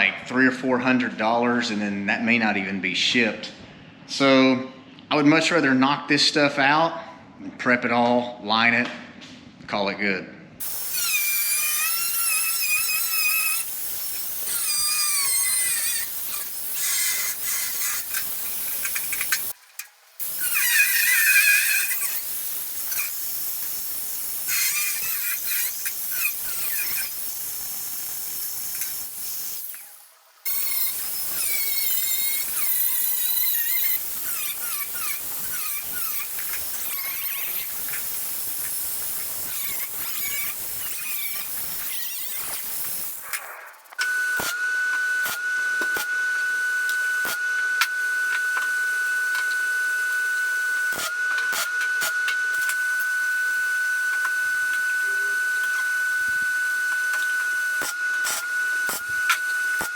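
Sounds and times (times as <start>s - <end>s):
rotary power tool squealing: 10.6s - 19.6s, 20.2s - 59.9s.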